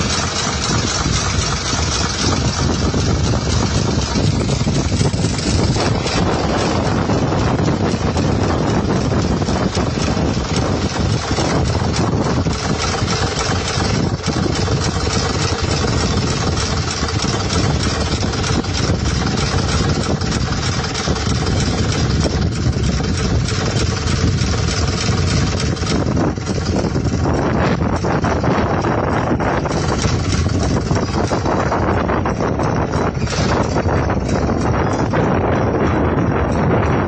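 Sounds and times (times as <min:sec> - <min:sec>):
vehicle engine and road rumble: 0:00.0 - 0:37.0.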